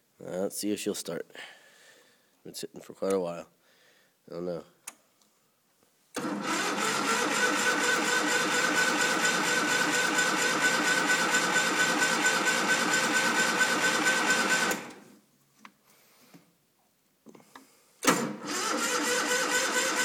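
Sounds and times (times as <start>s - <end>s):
starter cranking engine: 6.2s - 15.0s, 18.1s - 20.0s.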